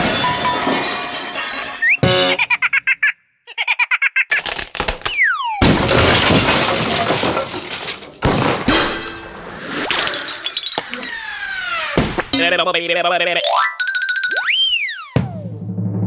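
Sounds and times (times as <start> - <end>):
crash of breaking and shattering: 0.0 - 2.6, 4.3 - 12.1.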